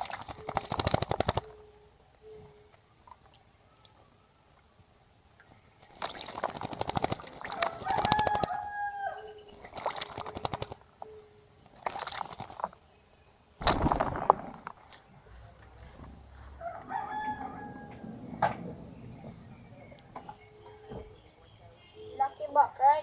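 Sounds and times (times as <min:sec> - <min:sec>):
rapid rattling: 0:05.8 - 0:08.5, 0:09.6 - 0:10.9, 0:11.7 - 0:12.8, 0:13.6 - 0:14.9
rooster crowing: 0:07.6 - 0:09.5, 0:16.5 - 0:18.5.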